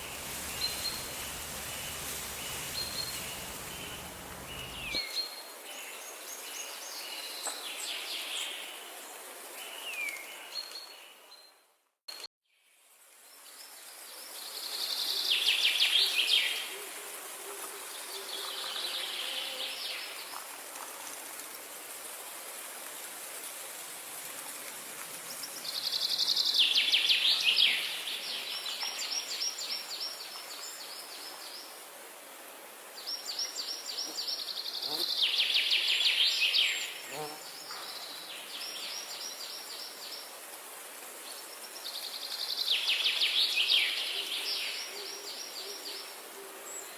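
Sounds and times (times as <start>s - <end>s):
birds singing trilled notes: 0.0s - 5.0s
high hiss of insects: 0.0s - 5.0s.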